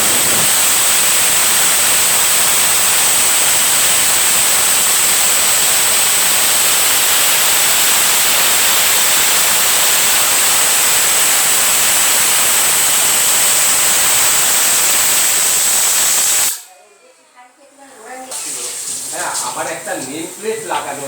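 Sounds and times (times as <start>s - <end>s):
pressure cooker steam hiss: 0.0s - 16.7s, 18.3s - 21.0s
pressure cooker whistle: 0.0s - 16.7s.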